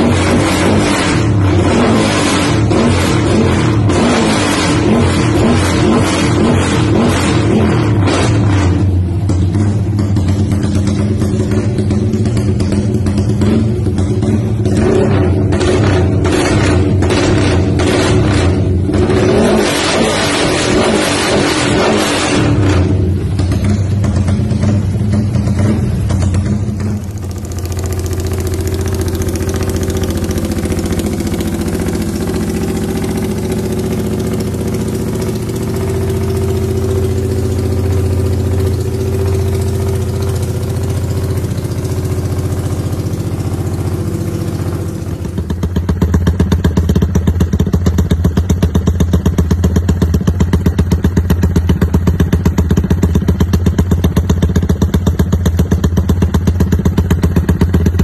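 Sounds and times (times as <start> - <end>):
motorcycle engine idling: 7.9 - 17.8, 22.5 - 58.0.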